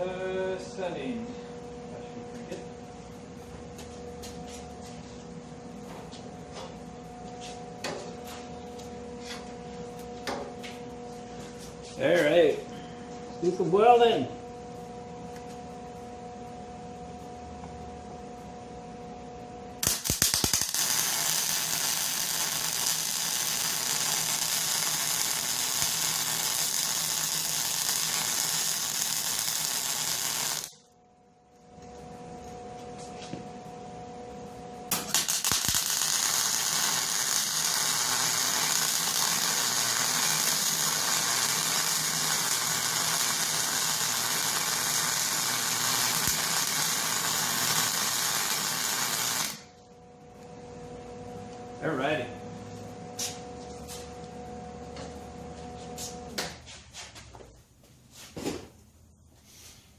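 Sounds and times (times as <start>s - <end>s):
welding arc crackling: 19.8s - 30.9s, 34.9s - 49.8s.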